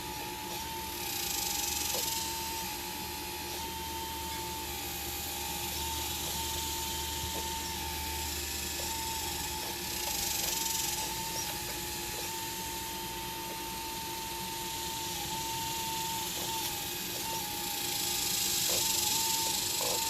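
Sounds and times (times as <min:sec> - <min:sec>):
hydraulic pump whining: 0:00.0 - 0:20.0
hiss: 0:00.5 - 0:02.6, 0:15.0 - 0:20.0.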